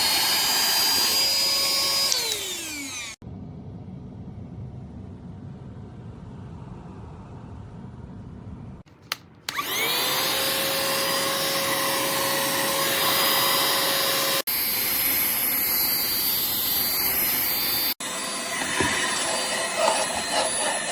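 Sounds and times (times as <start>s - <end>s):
vacuum motor whining: 0.0s - 3.2s, 9.5s - 20.9s
low rumble: 3.2s - 8.8s.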